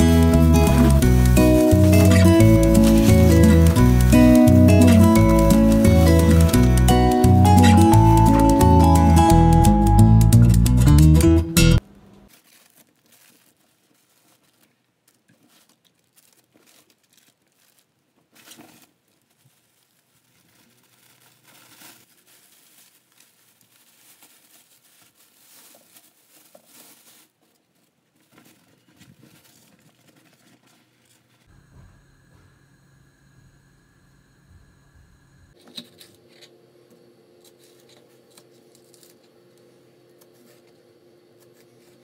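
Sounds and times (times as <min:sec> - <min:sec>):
rustling and crinkling: 0:00.0 - 0:06.6, 0:12.2 - 0:31.5, 0:37.4 - 0:42.0
acoustic guitar music: 0:00.0 - 0:11.8.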